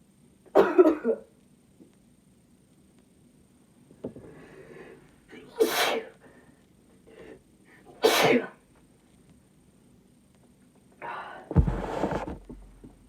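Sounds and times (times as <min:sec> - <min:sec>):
woman sneezing: 0:05.6 - 0:06.1, 0:08.0 - 0:08.6.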